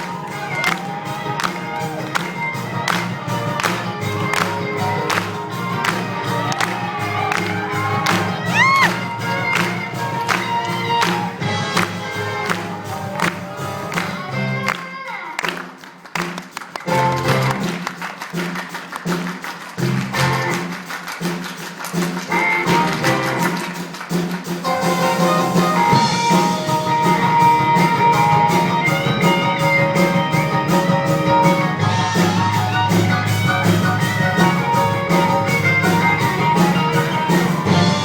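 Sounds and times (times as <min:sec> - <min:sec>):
picked guitar music: 0:00.0 - 0:15.0, 0:24.7 - 0:38.0.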